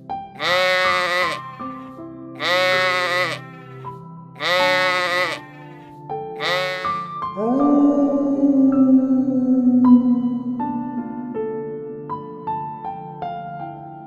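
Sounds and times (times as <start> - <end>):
background music with sustained tones: 0.0 - 14.0
animal bleating: 0.4 - 7.2.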